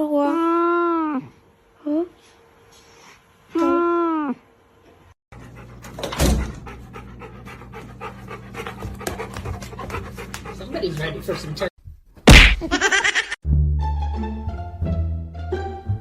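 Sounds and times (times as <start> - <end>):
dog panting: 5.3 - 11.7.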